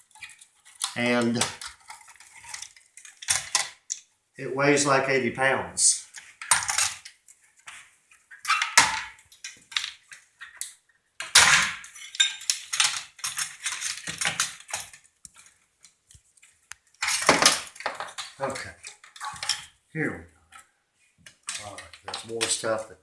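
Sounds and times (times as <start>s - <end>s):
metal parts clanking and rattling: 0.0s - 4.0s, 6.1s - 7.8s, 8.4s - 10.6s, 11.2s - 15.0s, 17.0s - 19.7s, 21.4s - 22.8s.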